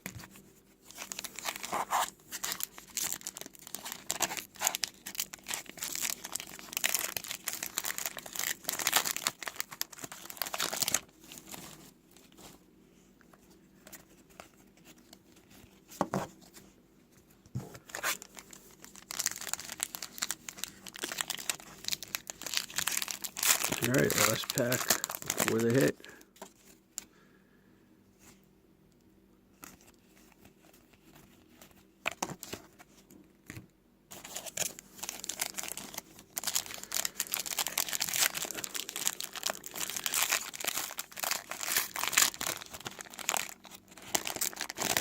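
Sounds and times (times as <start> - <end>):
wrapper torn and crinkled: 0.8 - 11.7, 17.9 - 26.2, 34.1 - 45.0.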